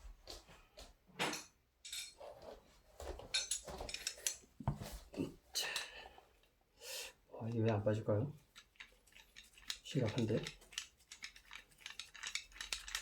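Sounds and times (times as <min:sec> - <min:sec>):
metal tools clinking and scraping: 0:01.3 - 0:02.3, 0:03.2 - 0:05.9, 0:07.5 - 0:13.0.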